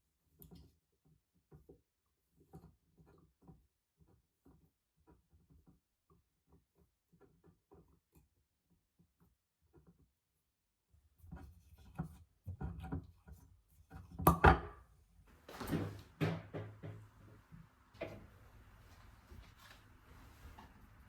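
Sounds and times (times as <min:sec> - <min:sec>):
kitchen items thudding and rubbing: 0:15.4 - 0:17.2
wooden and hard knocks: 0:15.6 - 0:17.1.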